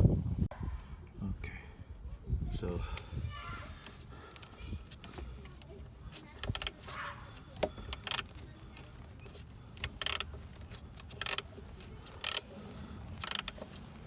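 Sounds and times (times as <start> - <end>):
ratcheting screwdriver clicking: 6.3 - 6.8, 7.6 - 12.4, 13.1 - 13.8.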